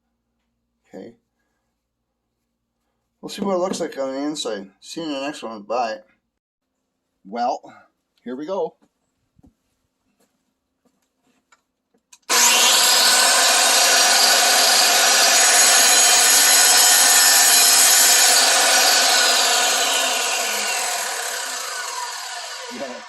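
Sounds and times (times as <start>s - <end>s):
power cutter grinding rock: 12.3s - 23.0s.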